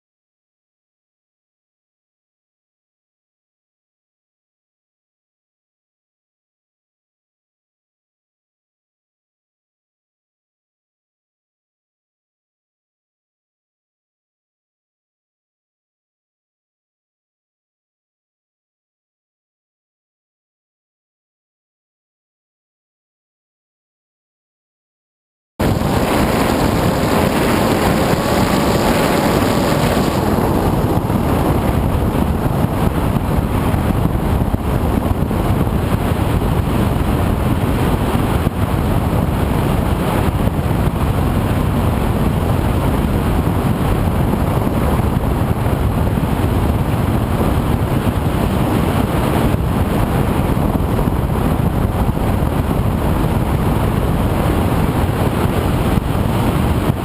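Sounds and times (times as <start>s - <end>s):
faint hum: 25.6s - 36.9s
aircraft motor noise: 25.6s - 57.0s
wind rushing over microphone: 25.6s - 57.0s.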